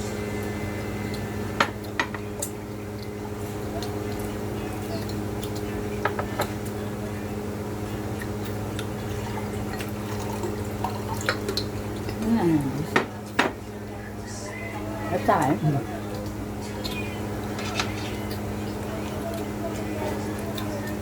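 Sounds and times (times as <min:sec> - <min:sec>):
steady low hum: 0:00.0 - 0:21.0
wet chewing: 0:08.0 - 0:13.4, 0:14.4 - 0:21.0.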